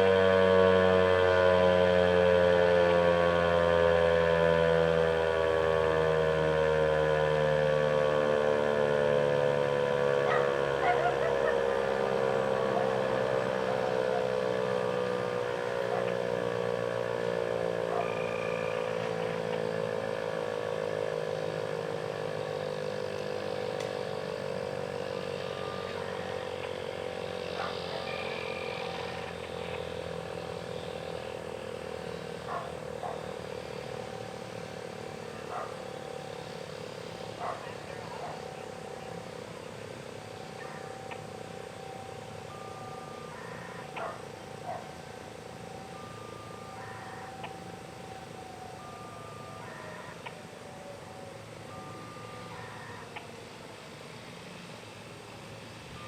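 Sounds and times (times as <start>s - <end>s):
warning siren winding down: 0.0s - 56.0s.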